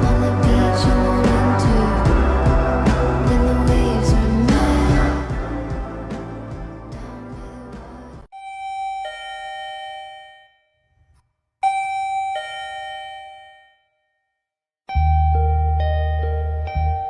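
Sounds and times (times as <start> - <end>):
ding-dong doorbell chime: 8.4 - 14.3.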